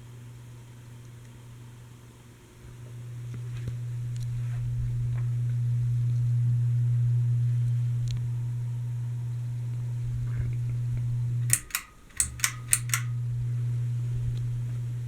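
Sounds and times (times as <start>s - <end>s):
ceiling fan motor humming: 0.0s - 15.0s
switch clicks: 11.4s - 13.3s.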